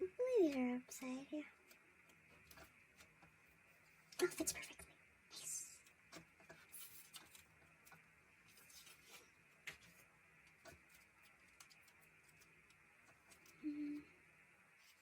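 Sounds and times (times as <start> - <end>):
plastic sleeves clicking and rustling: 5.8 - 13.6.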